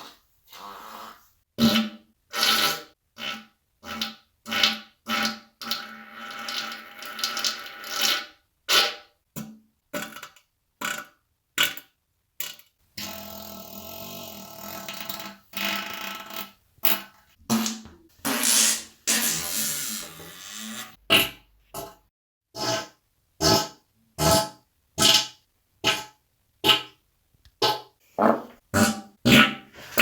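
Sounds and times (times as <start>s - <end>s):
human farts: 17.5s - 21.4s, 27.6s - 30.0s.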